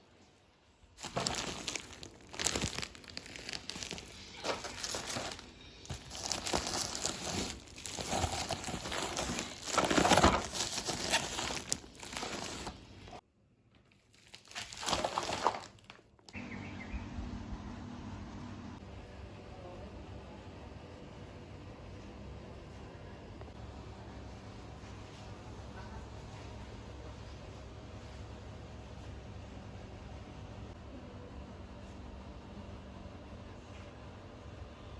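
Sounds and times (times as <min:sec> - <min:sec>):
faint steady hum: 0:00.0 - 0:34.9
crinkling handling noise: 0:01.0 - 0:16.4.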